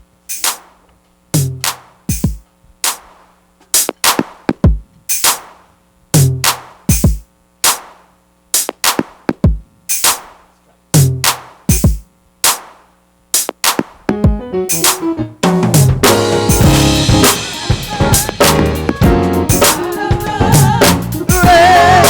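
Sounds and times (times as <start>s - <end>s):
snare drum cracks: 0.3s - 0.8s, 1.4s - 18.7s
kick drum thuds: 1.4s - 2.4s, 3.9s - 4.9s, 6.2s - 7.2s, 8.7s - 9.7s, 11.0s - 12.1s, 13.7s - 14.5s.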